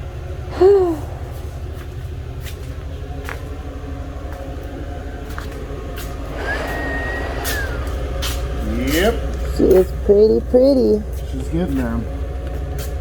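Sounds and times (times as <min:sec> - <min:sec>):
low mechanical motor drone: 0:00.0 - 0:13.0
high whistle-like tone: 0:06.5 - 0:08.0.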